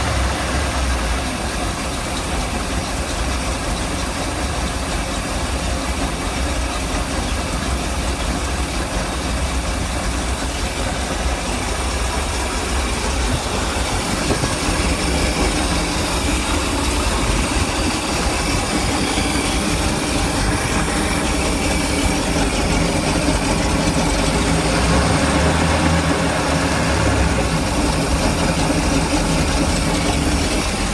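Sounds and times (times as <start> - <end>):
boat engine idling roughly: 0.0 - 30.9.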